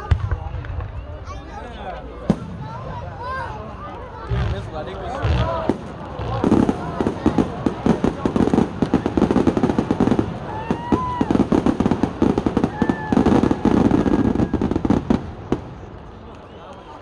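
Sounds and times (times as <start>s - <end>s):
fireworks cracking and popping: 3.9s - 16.9s.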